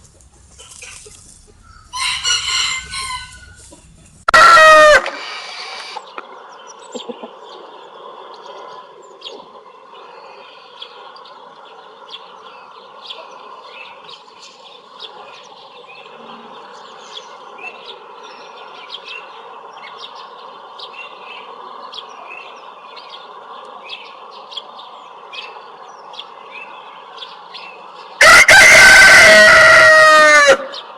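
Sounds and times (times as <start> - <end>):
rooster crowing: 1.9 - 3.6, 4.3 - 6.0, 28.2 - 30.9.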